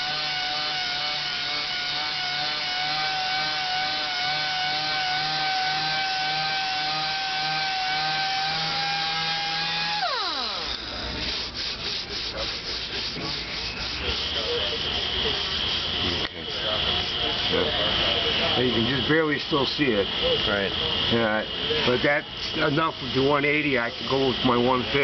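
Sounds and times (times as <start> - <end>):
sander spinning down: 0.0 - 17.7
orbital sander running: 0.0 - 25.0
rubbing and scuffing: 11.0 - 17.2.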